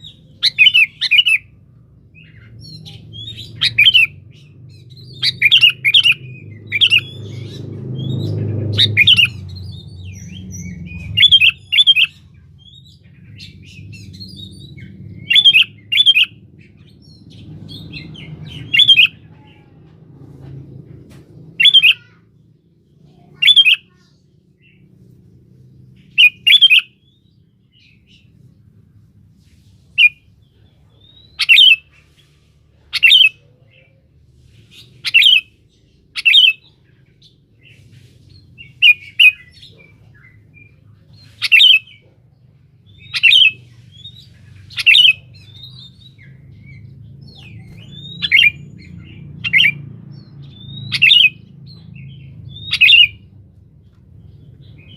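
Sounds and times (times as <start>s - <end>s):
bulbul calling: 0.0s - 1.5s, 2.2s - 12.3s, 15.2s - 16.4s, 31.3s - 31.9s, 42.9s - 49.8s, 50.5s - 53.3s.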